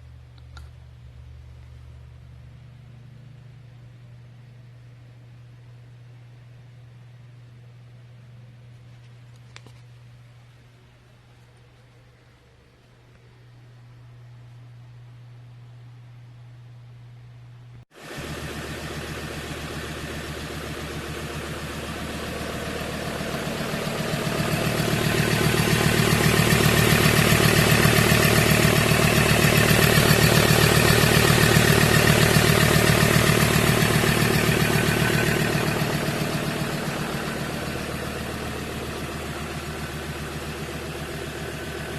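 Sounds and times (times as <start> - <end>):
diesel engine idling: 18.0 - 41.9.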